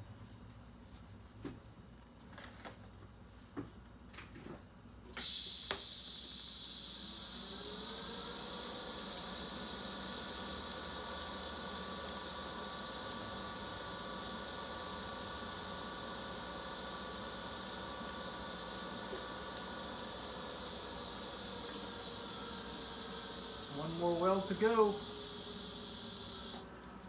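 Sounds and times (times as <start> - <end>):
welding arc buzzing hiss: 5.2 - 26.6.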